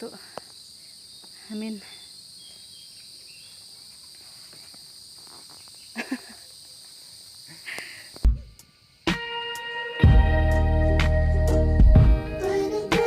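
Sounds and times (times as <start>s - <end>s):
soft footsteps on trail: 0.2s - 6.0s
music with held notes: 9.1s - 13.0s.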